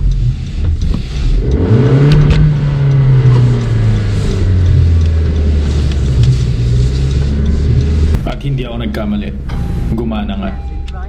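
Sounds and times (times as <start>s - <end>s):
car engine revving: 0.0s - 10.5s.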